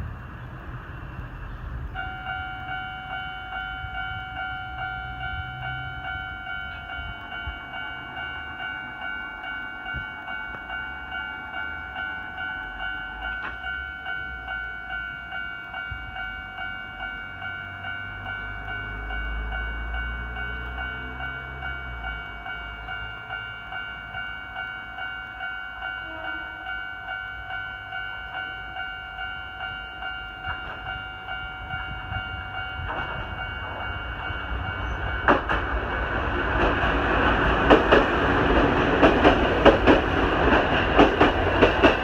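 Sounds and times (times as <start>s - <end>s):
level crossing alarm dings: 2.0s - 35.6s.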